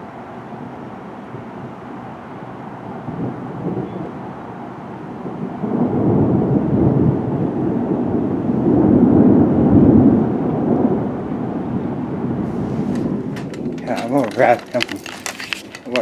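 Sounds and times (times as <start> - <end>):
rolling thunder: 2.9 - 14.9.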